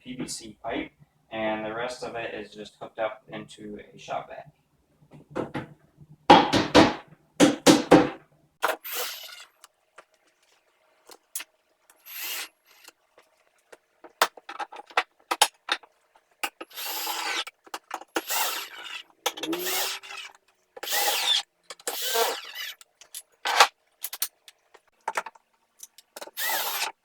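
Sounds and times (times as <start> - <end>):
wood scraping and rubbing: 11.9 - 25.4
wooden pieces knocking: 13.7 - 26.9.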